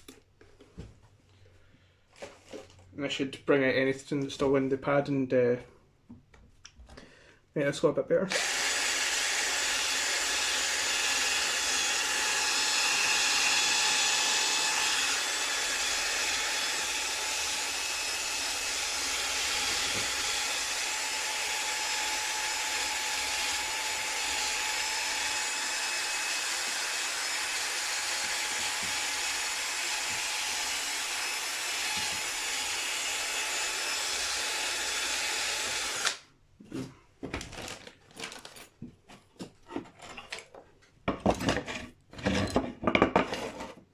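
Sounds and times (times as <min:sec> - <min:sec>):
electric polisher running: 0:08.3 - 0:36.2.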